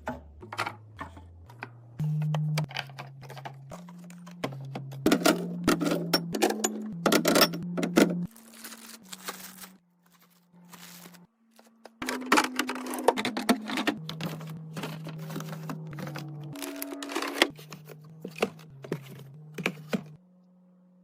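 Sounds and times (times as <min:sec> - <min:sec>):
food containers clattering: 0:11.6 - 0:20.2.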